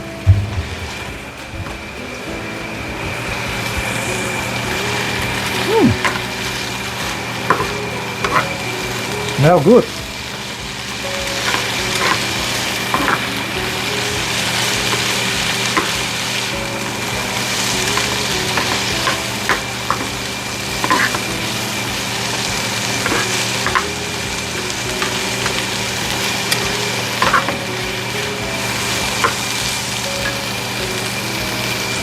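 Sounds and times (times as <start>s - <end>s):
chicken sizzling in a pan: 0.2s - 32.0s.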